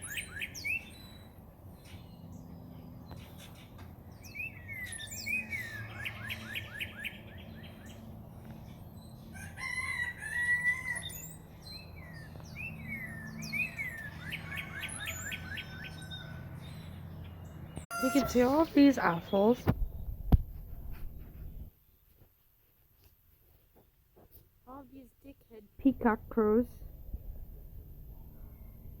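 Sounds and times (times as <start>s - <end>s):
bird song whistles and rattle: 0.0s - 1.2s, 4.3s - 7.9s.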